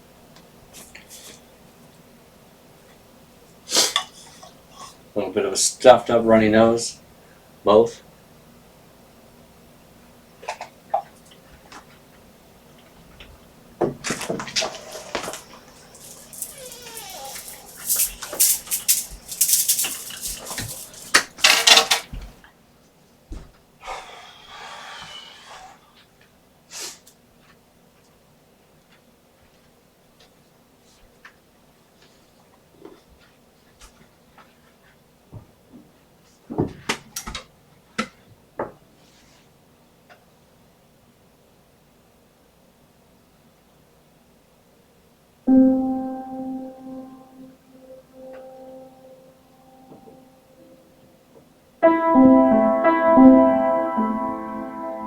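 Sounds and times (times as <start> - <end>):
person sniffing: 3.7 - 4.0, 23.8 - 25.9, 26.7 - 27.1
tissue rustling: 15.0 - 21.3
person blowing nose: 16.0 - 19.4, 23.8 - 25.8, 26.7 - 27.0
objects knocking and clicking: 16.0 - 22.3.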